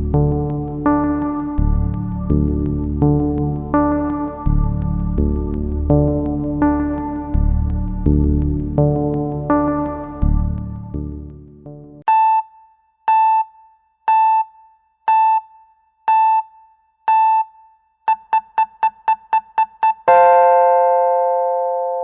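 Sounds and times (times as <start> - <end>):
electronic timer beeps: 12.1 - 20.5
alarm chime: 19.8 - 22.0.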